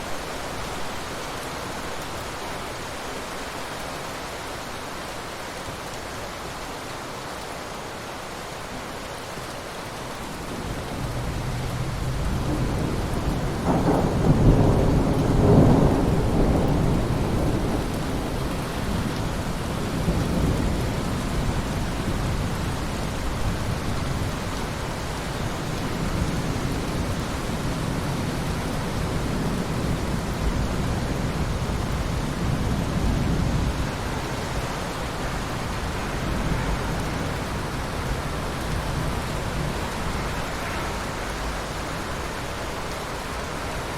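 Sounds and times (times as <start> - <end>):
steady rain in a forest: 0.0 - 43.9
rolling thunder: 10.5 - 24.5, 25.5 - 42.9.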